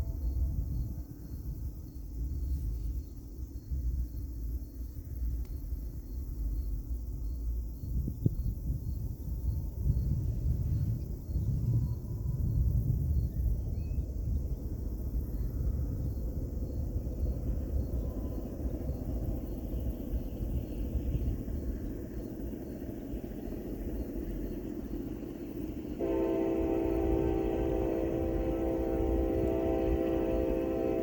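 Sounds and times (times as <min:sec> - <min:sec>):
freight train rumbling: 0:00.0 - 0:31.0
locomotive horn chord: 0:26.0 - 0:31.0.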